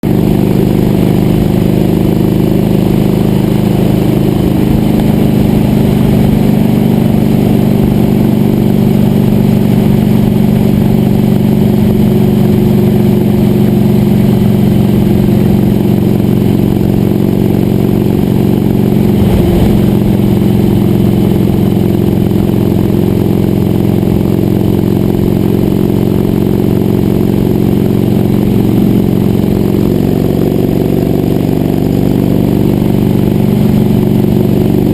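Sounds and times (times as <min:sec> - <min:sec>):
sawmill engine running: 0:17.6 - 0:22.8.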